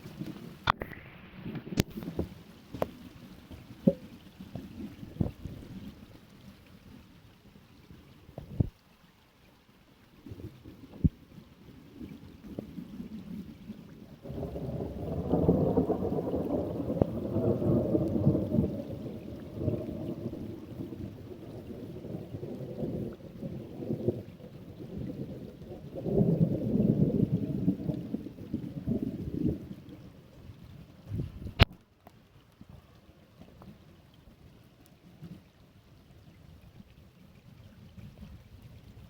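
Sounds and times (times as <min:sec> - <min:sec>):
steady rain: 0:00.0 - 0:39.0
thunder rumbling: 0:12.8 - 0:30.4.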